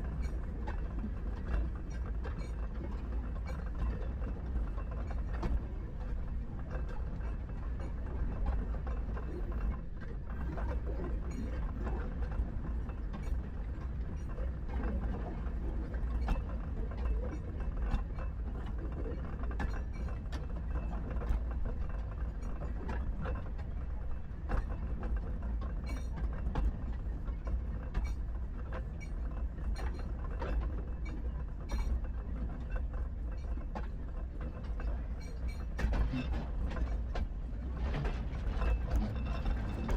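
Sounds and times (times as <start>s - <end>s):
train rumbling: 0.0s - 39.9s
wheels clicking and rattling: 0.0s - 39.9s.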